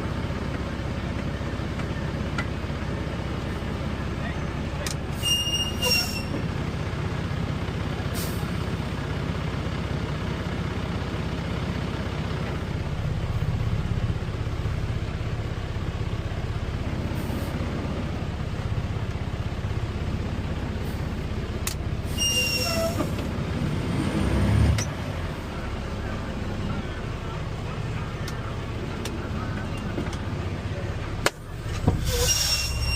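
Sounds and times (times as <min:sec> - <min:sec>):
diesel engine running: 0:00.0 - 0:32.9
short high squeals: 0:05.1 - 0:06.4, 0:22.1 - 0:23.2, 0:32.0 - 0:32.9.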